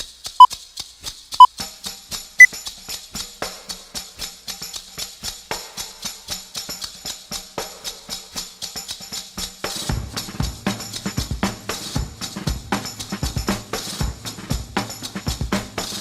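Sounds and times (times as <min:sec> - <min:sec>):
tambourine-like percussion beat: 0:00.0 - 0:16.0
drums and bass: 0:09.7 - 0:16.0.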